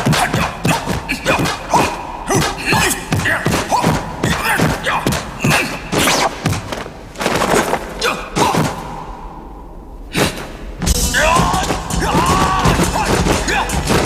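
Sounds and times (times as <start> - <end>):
thuds: 0.0 - 8.9
punch and kick hits: 2.3 - 6.9.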